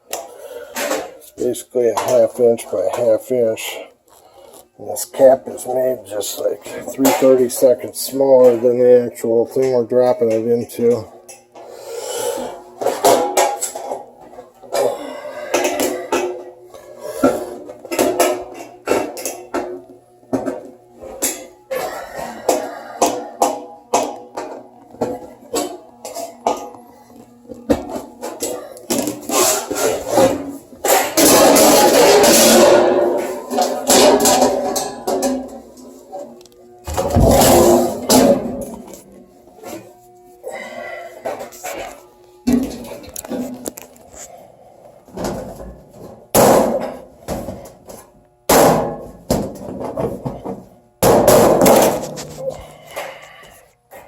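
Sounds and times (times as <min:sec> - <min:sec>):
metal scraping on metal: 0:29.2 - 0:35.4
sharp knocks on sheet metal: 0:46.3 - 0:47.0, 0:48.5 - 0:49.5, 0:51.0 - 0:52.0.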